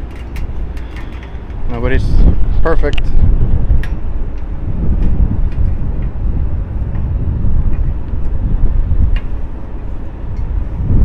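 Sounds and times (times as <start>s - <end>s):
light clicks from handling wiring: 0.0s - 3.2s
wind buffeting microphone: 0.0s - 11.0s.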